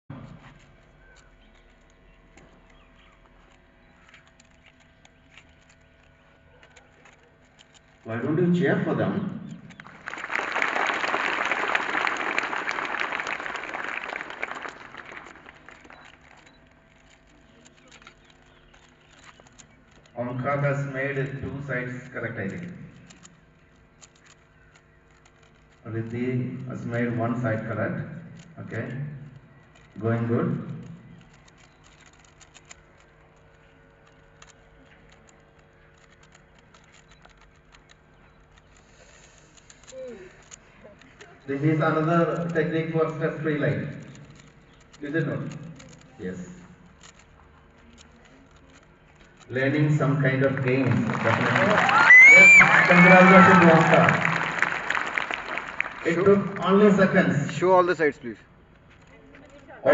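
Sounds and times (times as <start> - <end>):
plastic puzzle cube clicking: 0.6 - 8.0, 15.2 - 20.2, 22.0 - 26.7, 29.2 - 41.3, 42.3 - 49.5
people clapping: 9.8 - 16.5, 50.4 - 57.6.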